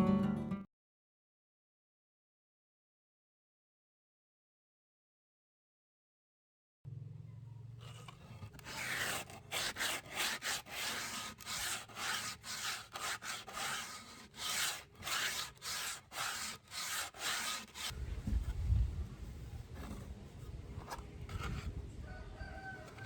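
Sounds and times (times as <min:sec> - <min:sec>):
sandpaper rubbing on wood: 0:07.8 - 0:18.0.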